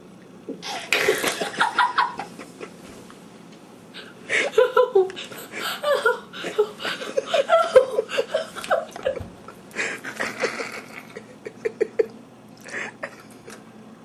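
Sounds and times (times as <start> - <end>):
people laughing: 0.9 - 2.8, 4.4 - 9.3, 10.0 - 12.1.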